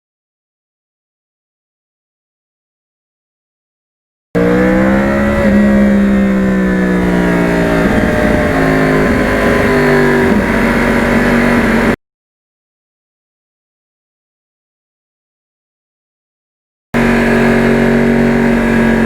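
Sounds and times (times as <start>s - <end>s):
motorcycle engine running loud: 4.4s - 12.0s, 17.0s - 19.0s.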